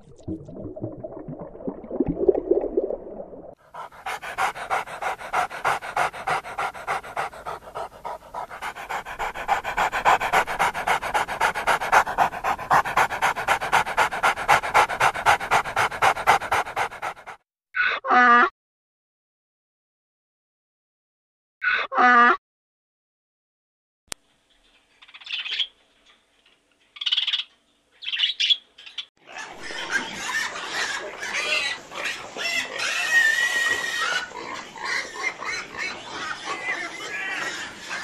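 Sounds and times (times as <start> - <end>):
dog panting fast: 3.6 - 17.4.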